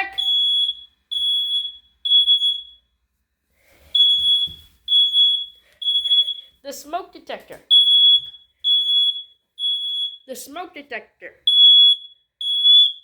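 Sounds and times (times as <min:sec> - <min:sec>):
smoke detector beeping: 0:00.0 - 0:02.9, 0:04.0 - 0:06.6, 0:07.7 - 0:10.3, 0:11.5 - 0:13.0.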